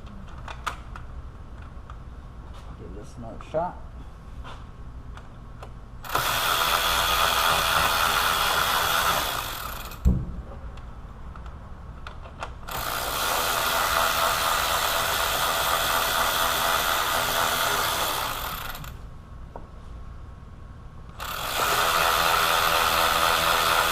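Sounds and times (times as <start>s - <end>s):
cordless power tool running: 6.0s - 10.0s, 12.7s - 19.0s, 21.2s - 23.9s
thump: 10.0s - 10.5s.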